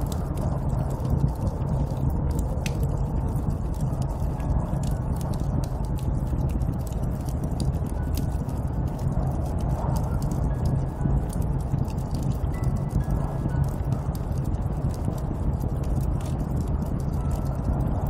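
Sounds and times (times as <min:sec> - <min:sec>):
small crackles: 0:00.0 - 0:18.0.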